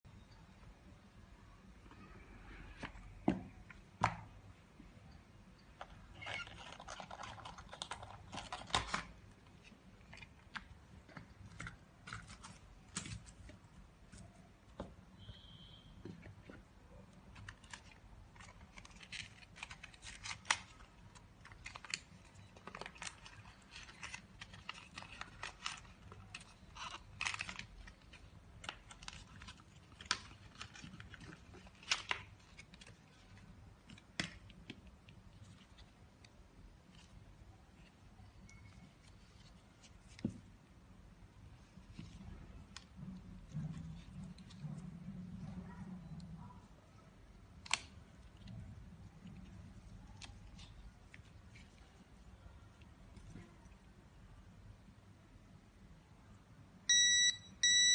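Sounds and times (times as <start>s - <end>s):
packaging rustling: 6.0s - 14.4s, 16.9s - 34.7s.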